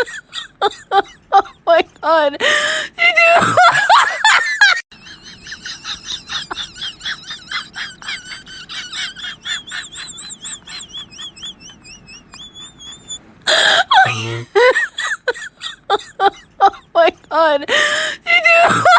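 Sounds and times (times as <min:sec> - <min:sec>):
loud wailing laugh: 0:03.3 - 0:17.0
high-pitched squeaky laugh: 0:05.0 - 0:16.9.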